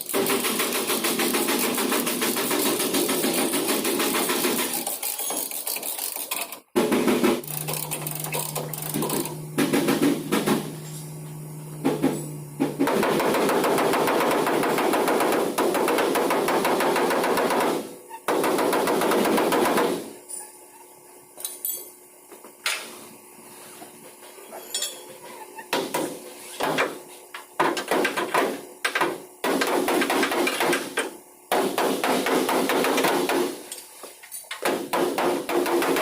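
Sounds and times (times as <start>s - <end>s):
hammering on sheet metal: 12.8s - 20.1s, 27.6s - 33.7s, 34.6s - 36.0s.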